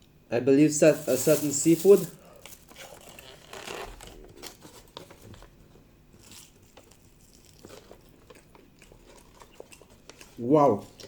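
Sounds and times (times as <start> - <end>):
chewing bread: 6.1 - 11.0.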